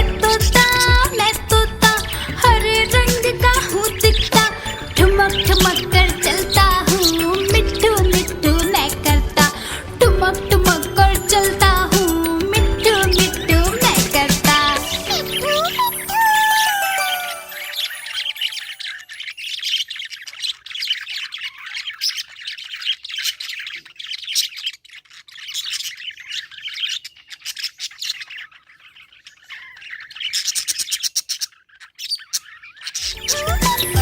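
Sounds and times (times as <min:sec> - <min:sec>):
budgerigar chirping and chattering: 0:00.0 - 0:16.0, 0:17.7 - 0:34.0.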